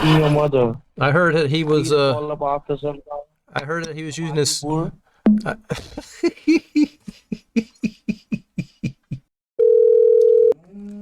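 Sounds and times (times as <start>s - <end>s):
steady telephone tone: 9.6s - 10.6s.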